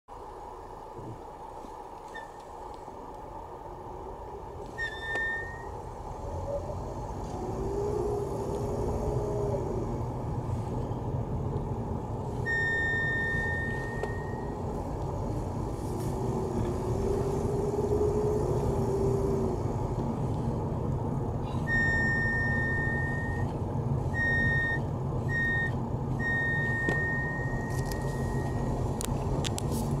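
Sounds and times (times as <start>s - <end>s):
car engine running: 0.1s - 30.0s
high whistle from brake booster: 4.6s - 5.8s, 12.4s - 14.6s, 21.5s - 23.5s, 24.1s - 28.8s.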